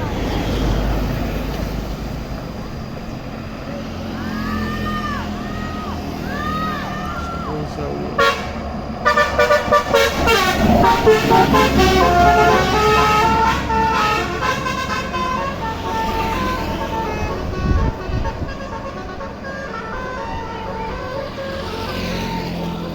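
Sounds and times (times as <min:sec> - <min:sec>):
bus engine rumbling: 0:00.0 - 0:22.9
bus horn playing a melody: 0:08.1 - 0:22.9.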